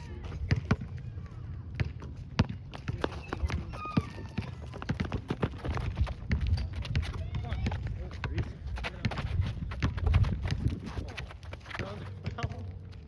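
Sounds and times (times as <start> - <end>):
sneaker squeaks: 0.0 - 10.1
basketball bouncing: 0.2 - 1.1, 1.7 - 10.8.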